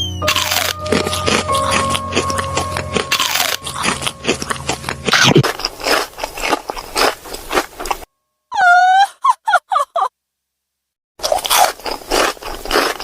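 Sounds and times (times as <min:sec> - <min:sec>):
crunchy chewing of fruit: 0:00.1 - 0:08.1, 0:11.2 - 0:13.0.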